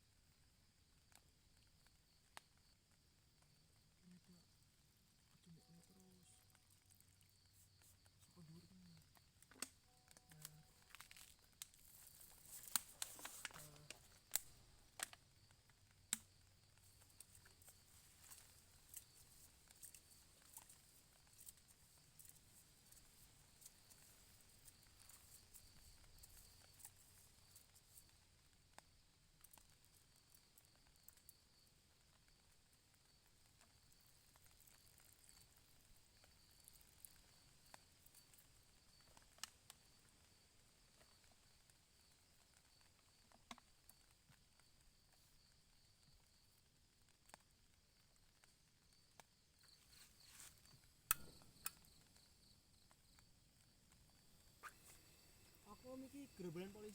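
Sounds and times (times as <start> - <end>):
soft ticks of drizzle drops: 0.0 - 56.9
high insect drone: 47.9 - 56.9.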